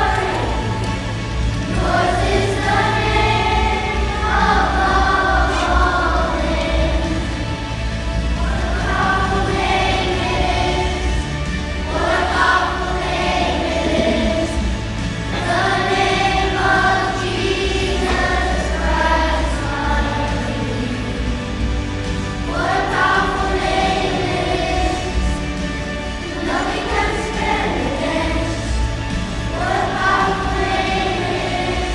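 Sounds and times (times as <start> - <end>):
choir singing: 0.0 - 31.9
musical accompaniment: 0.0 - 31.9.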